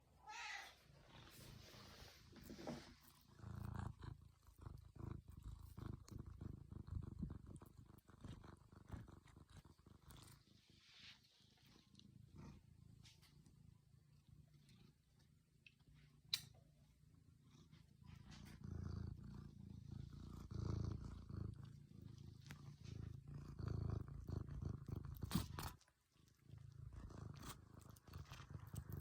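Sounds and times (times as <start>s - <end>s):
cat meowing: 0.2s - 0.8s
cat purring: 0.8s - 29.0s.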